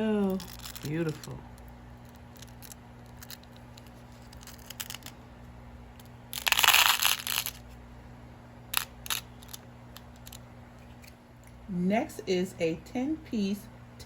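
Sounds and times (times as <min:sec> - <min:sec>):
plastic bag of beads rustling: 0:00.0 - 0:01.4, 0:02.0 - 0:05.1, 0:06.4 - 0:07.6.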